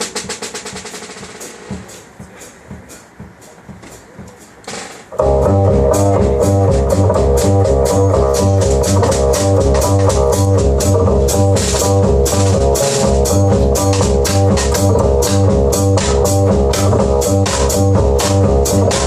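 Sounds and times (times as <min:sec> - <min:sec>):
cymbal and drum strokes: 0:00.0 - 0:19.0
jazz band playing: 0:00.0 - 0:19.0
double bass figure: 0:05.2 - 0:19.0.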